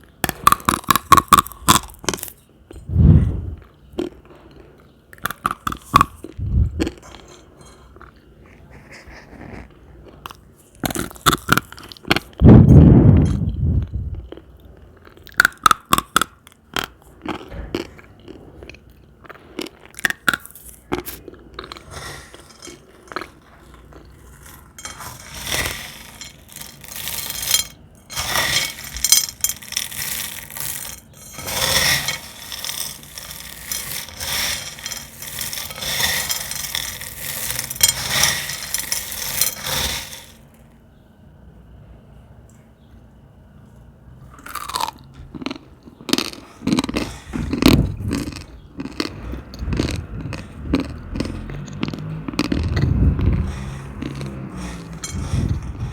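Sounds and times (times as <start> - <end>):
crisp film crackling: 20.6 - 40.5
scraping: 21.6 - 40.5, 46.8 - 55.9.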